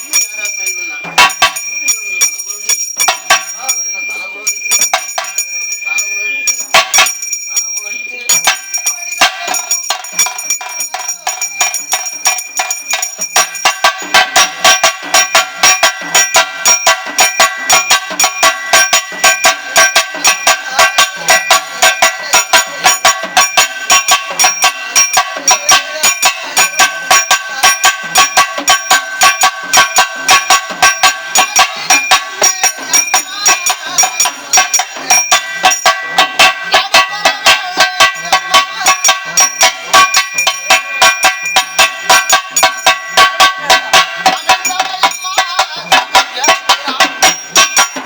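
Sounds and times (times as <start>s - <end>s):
ringing metal tones: 0.0s - 48.0s
fast drum strokes: 8.4s - 48.0s.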